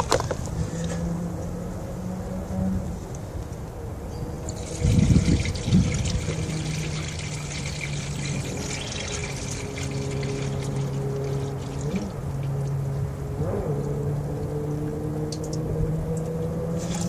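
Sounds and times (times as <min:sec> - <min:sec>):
liquid trickling into a funnel: 0:04.4 - 0:12.6.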